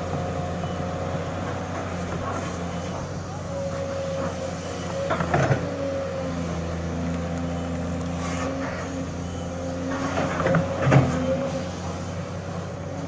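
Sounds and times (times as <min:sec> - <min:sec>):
excavator diesel engine running: 0:00.0 - 0:13.0
clanking and scraping soil: 0:01.4 - 0:13.0.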